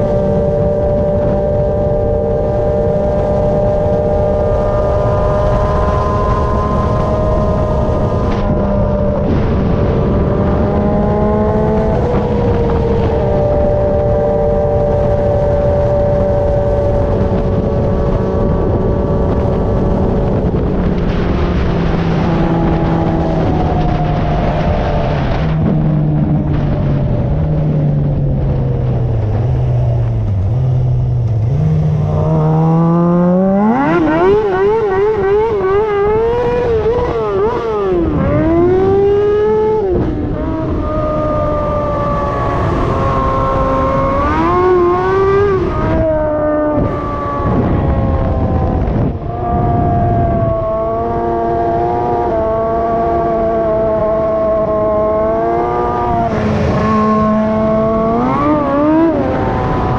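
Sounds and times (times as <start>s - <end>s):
engine revving at high revs: 31.4s - 59.9s.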